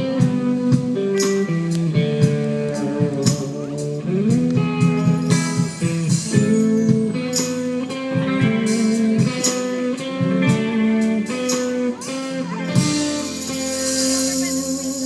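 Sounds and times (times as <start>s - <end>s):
guitar playing held notes: 0.0s - 15.0s
percussion hits: 4.3s - 10.7s, 12.8s - 15.0s.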